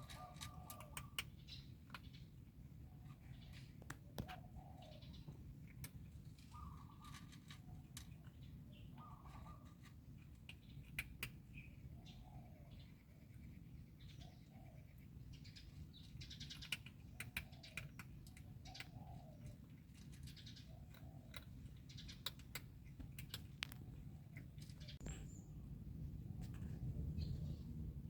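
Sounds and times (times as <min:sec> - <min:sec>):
steady low rumble: 0:25.0 - 0:28.0.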